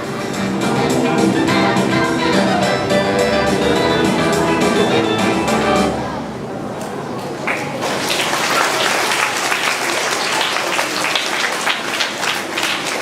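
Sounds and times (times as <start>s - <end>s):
children clapping: 7.2s - 13.0s.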